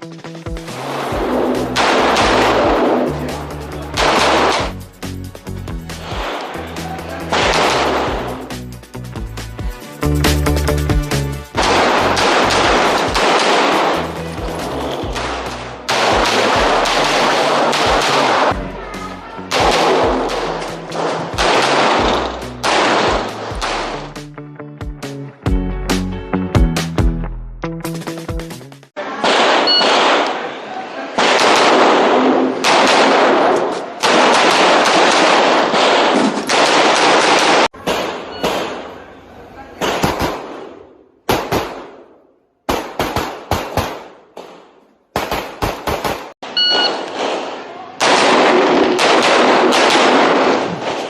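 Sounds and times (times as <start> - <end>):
loud music with thumping beat: 0.0 - 15.5, 19.5 - 28.8
handgun shots echoing: 1.7 - 3.2, 3.9 - 4.8, 11.6 - 14.2, 15.1 - 18.6, 19.5 - 24.1, 29.2 - 30.4, 31.2 - 38.9, 39.8 - 51.0.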